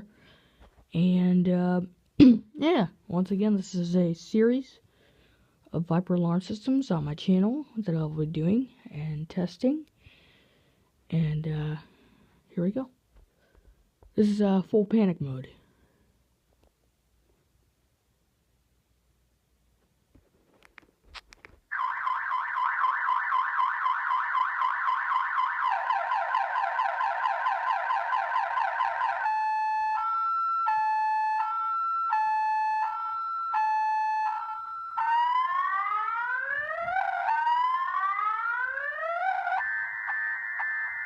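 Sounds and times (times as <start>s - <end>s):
car alarm siren: 21.7s - 41.0s.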